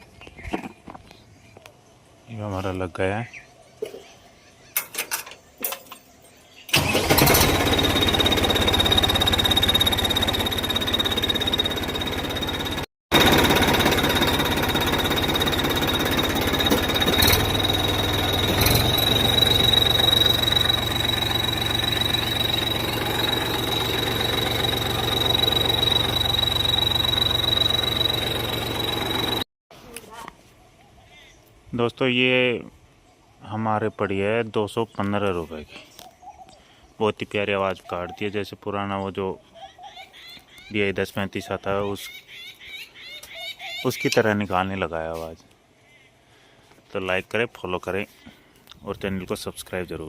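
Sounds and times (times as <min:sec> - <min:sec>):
tractor engine running: 0:06.7 - 0:29.5
steady high whistle: 0:17.3 - 0:29.4.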